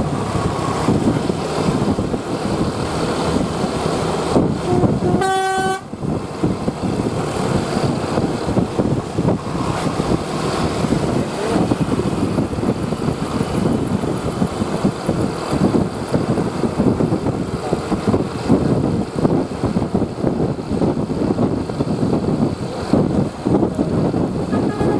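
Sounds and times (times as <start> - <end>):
bus engine and road noise: 0.0 - 24.9
bus horn toots: 4.6 - 6.0, 24.4 - 24.9.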